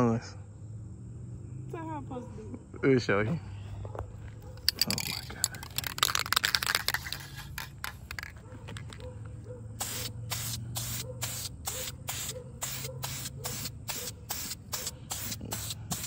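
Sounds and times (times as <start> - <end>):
spray paint can hissing in bursts: 5.0 - 8.3, 9.8 - 16.0.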